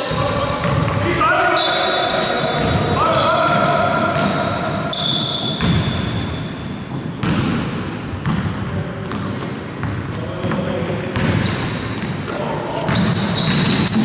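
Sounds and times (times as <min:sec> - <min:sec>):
shoe squeaks on court: 0:01.7 - 0:07.2, 0:07.9 - 0:08.4, 0:09.1 - 0:10.6, 0:11.4 - 0:14.0
basketball bouncing: 0:02.6 - 0:04.5, 0:05.5 - 0:06.3, 0:06.9 - 0:11.6, 0:12.9 - 0:14.0.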